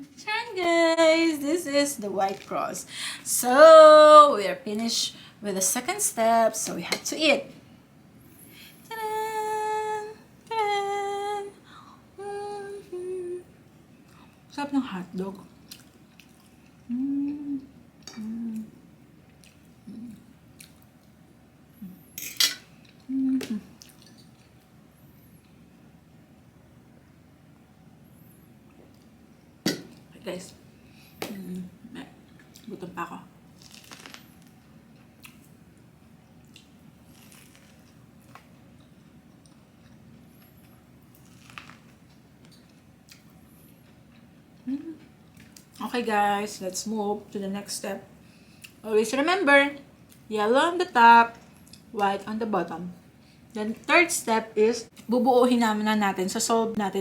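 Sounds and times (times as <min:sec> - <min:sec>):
person humming while chewing: 0:12.2 - 0:13.6, 0:16.8 - 0:18.8, 0:19.8 - 0:20.3, 0:23.0 - 0:23.9, 0:44.6 - 0:45.1
faint chewing: 0:15.3 - 0:21.2, 0:22.4 - 0:24.7, 0:33.6 - 0:45.8
soft mouth clicks: 0:17.0 - 0:18.7.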